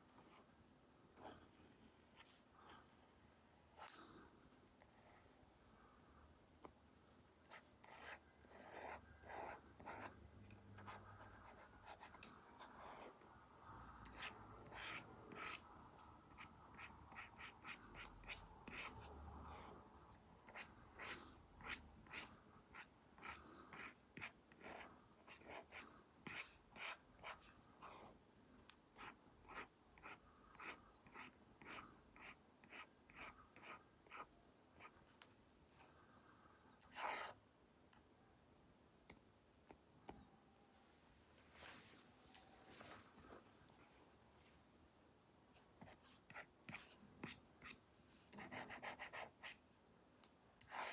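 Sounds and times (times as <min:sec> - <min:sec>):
stylus scratching and tapping on screen: 0:45.6 - 0:49.6.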